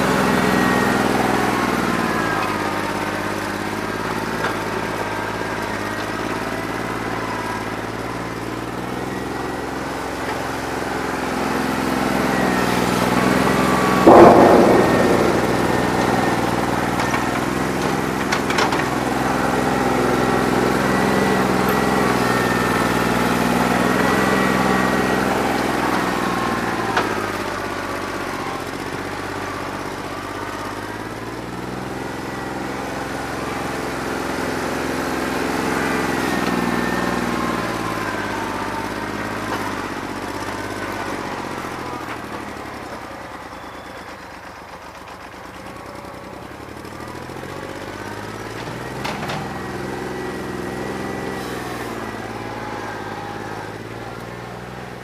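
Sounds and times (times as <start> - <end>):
diesel tractor engine running unevenly: 0.0 - 55.0
loud engine knock: 11.4 - 27.5.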